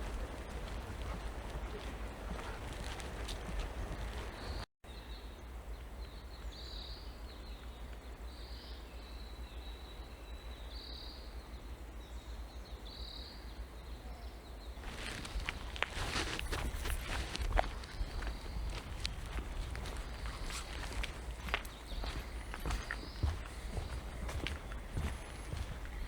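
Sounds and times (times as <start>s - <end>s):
footsteps on trail: 0.0s - 4.7s, 14.8s - 26.0s.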